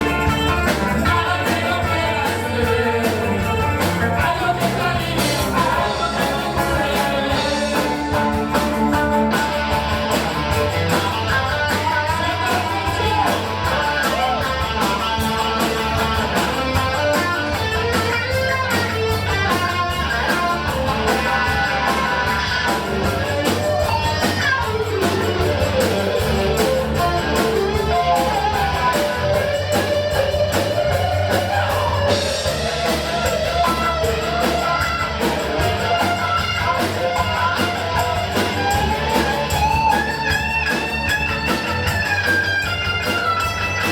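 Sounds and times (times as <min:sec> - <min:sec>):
rock guitar: 0:00.0 - 0:43.9
steady drum beat: 0:00.0 - 0:43.9
sustained bass notes: 0:00.0 - 0:43.9.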